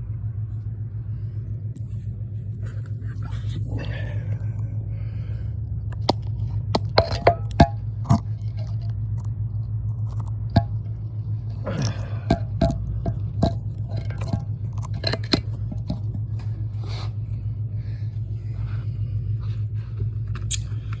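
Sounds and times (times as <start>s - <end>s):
steady low hum: 0.0s - 21.0s.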